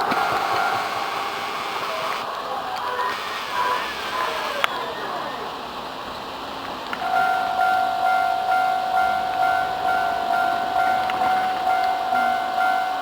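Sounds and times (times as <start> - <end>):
level crossing warning bell: 0.0 - 13.0.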